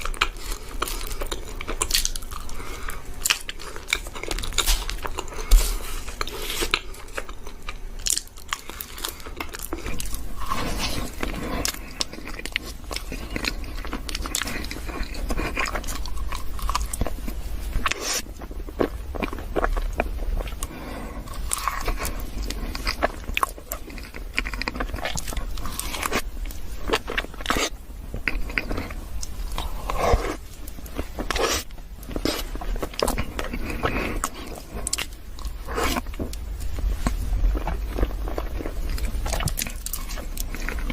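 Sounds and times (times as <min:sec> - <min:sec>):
soft wet chewing: 0:00.0 - 0:40.9.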